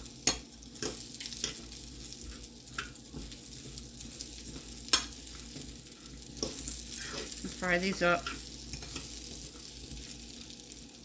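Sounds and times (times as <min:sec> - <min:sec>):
food sizzling in oil: 0:00.0 - 0:11.0
fork clicking against pan: 0:00.2 - 0:01.7, 0:04.9 - 0:05.7.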